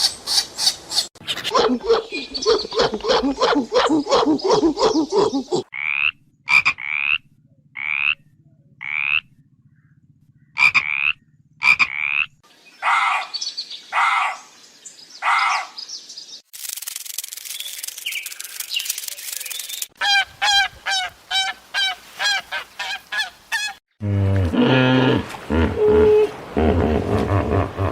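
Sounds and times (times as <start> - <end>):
low hum: 7.1 - 11.6
chirps: 17.4 - 20.0
deep animal call: 24.0 - 27.9.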